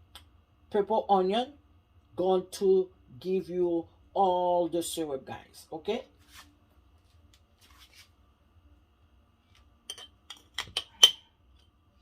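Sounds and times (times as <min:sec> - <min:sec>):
utensils clinking on glassware: 0:09.9 - 0:11.2.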